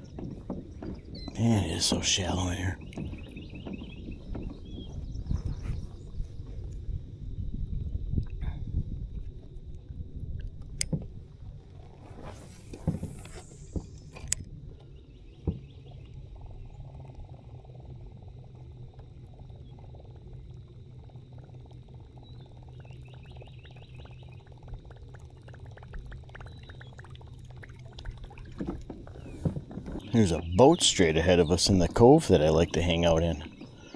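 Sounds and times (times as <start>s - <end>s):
water splashing off paddle: 11.9s - 14.4s, 28.0s - 33.9s.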